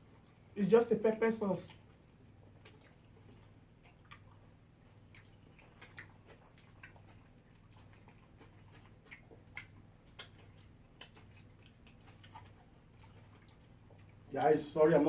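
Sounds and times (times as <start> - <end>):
faint chewing: 0.0 - 15.0
wet mouth clicks and smacks: 1.7 - 4.4, 5.1 - 14.2.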